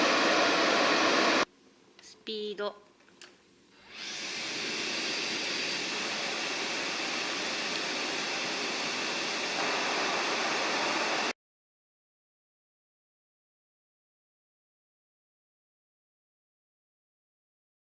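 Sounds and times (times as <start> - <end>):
pet dryer blowing air: 0.0 - 1.5, 3.8 - 11.4.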